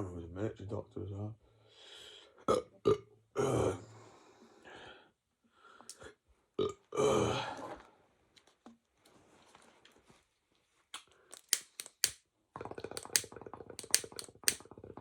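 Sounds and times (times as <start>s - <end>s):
man burping: 2.5s - 3.8s, 6.6s - 7.6s.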